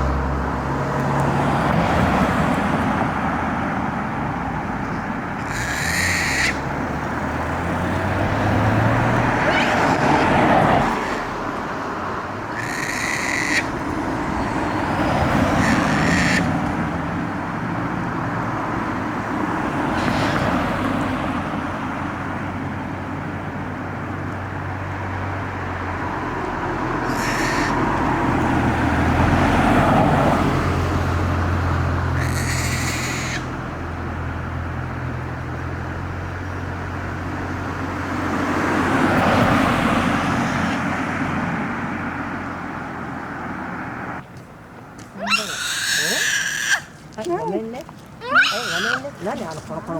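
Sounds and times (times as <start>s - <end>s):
low engine hum: 0.0s - 45.8s
traffic passing: 0.0s - 49.9s
monkeys high-pitched calls: 5.4s - 6.7s, 9.4s - 10.3s, 10.9s - 11.3s, 12.6s - 13.8s, 15.5s - 16.5s, 27.0s - 27.9s, 32.2s - 33.6s, 45.2s - 47.0s, 48.2s - 49.2s.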